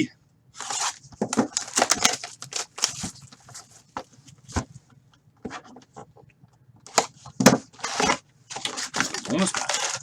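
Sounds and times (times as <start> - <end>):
card pack wrappers crinkling: 0.6 - 3.6, 8.6 - 10.0.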